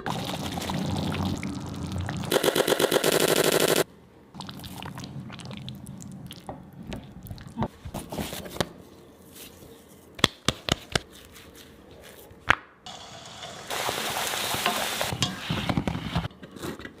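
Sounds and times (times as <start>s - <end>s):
hot oil sizzling: 12.9s - 15.6s.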